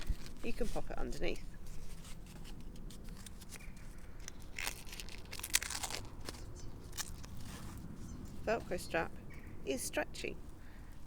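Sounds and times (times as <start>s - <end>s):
velcro strap rasping: 1.7s - 7.8s.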